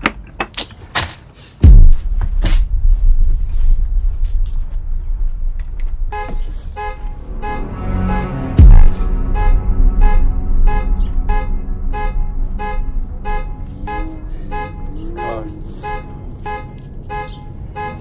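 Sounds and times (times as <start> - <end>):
deep boom falling in pitch: 1.6 - 15.3
steady low rumble: 1.6 - 18.0
car alarm horn honking: 6.1 - 18.0.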